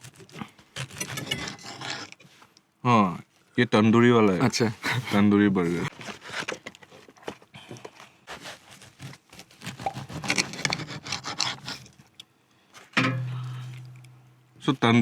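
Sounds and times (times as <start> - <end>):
paper wrapper crinkling: 5.7 - 10.9
low steady hum: 13.0 - 15.0.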